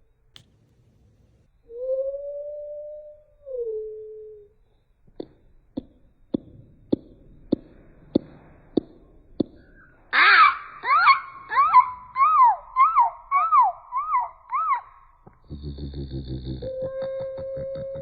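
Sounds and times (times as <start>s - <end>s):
sharp clicks: 0.3s - 1.5s
howl-like animal call: 1.7s - 4.6s, 10.2s - 15.0s, 16.6s - 18.0s.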